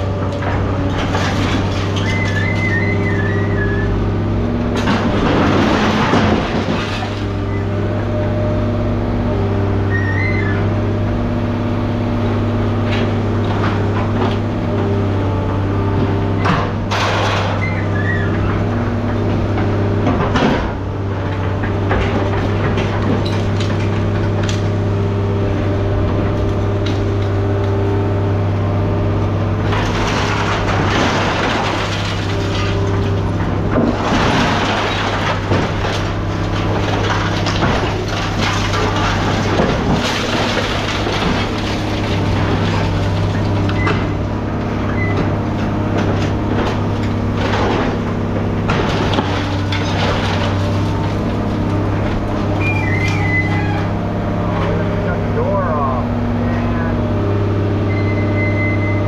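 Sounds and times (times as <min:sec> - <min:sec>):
engine running: 0:00.0 - 0:59.0.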